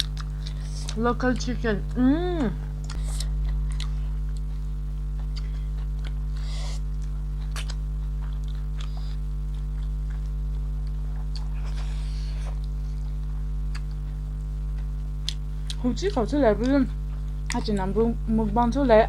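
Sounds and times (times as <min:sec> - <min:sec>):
chewing and biting: 0:00.0 - 0:01.5, 0:02.7 - 0:15.8
electrical mains hum: 0:00.0 - 0:19.0.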